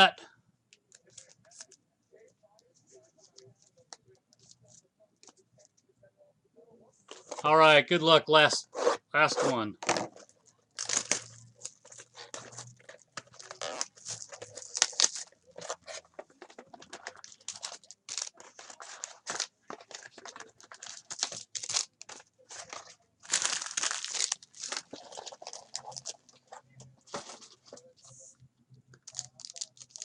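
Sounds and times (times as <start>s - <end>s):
cards scraping together: 8.6s - 10.2s
wrapper tearing and crinkling: 10.7s - 16.0s, 16.9s - 26.3s, 29.0s - 30.0s.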